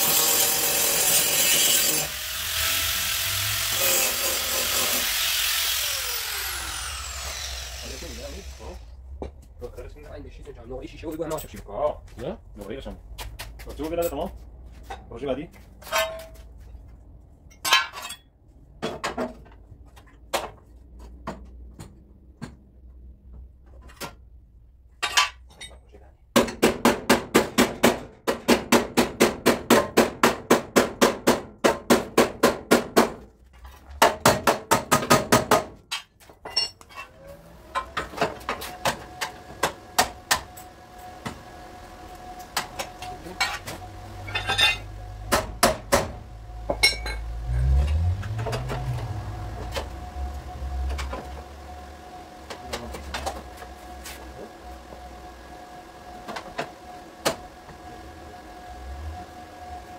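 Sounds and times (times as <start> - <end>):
hammer striking sheet metal: 44.4 - 47.2.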